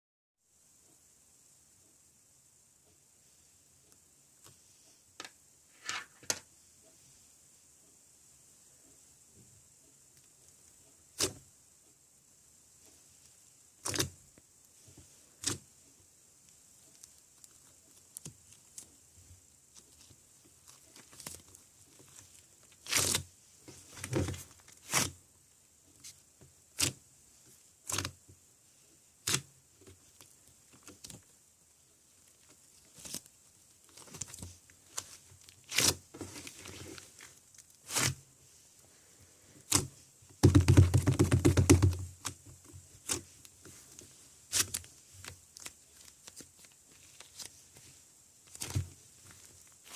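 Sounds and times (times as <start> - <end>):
clay squishing and pulling: 10.1 - 11.6, 12.8 - 49.9.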